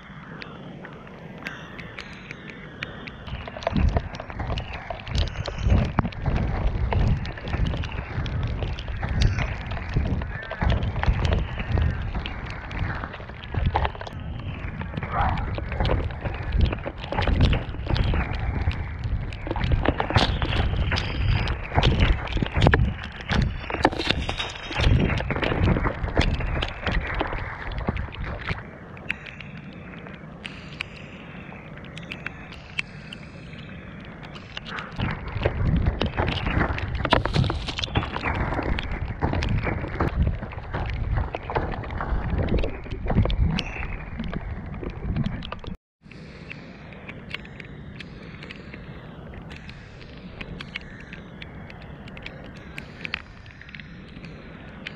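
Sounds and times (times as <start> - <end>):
skates grinding through mud and grit: 3.6 - 29.1, 34.3 - 45.7.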